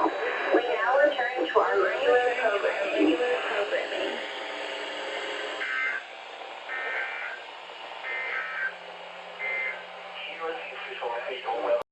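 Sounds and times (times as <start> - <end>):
steady radio hiss: 0.0 - 11.9.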